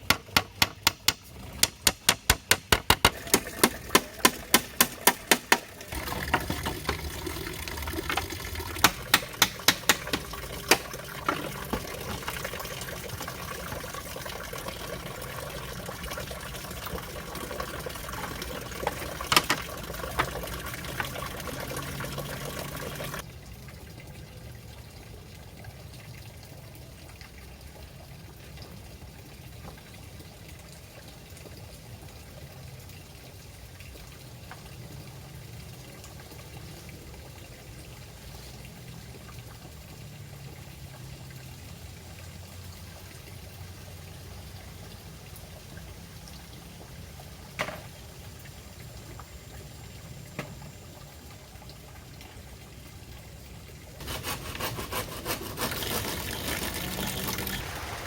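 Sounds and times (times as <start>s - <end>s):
sharp knocks: 0.0s - 7.1s, 8.8s - 12.0s
running water rushing: 0.0s - 23.3s, 31.8s - 58.0s.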